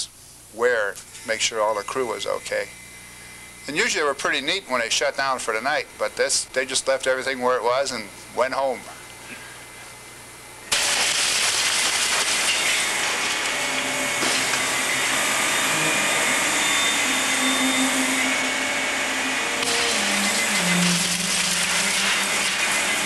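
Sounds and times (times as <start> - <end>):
crunching of building being torn down: 10.7 - 13.5
demolition machinery engine running: 10.7 - 23.0.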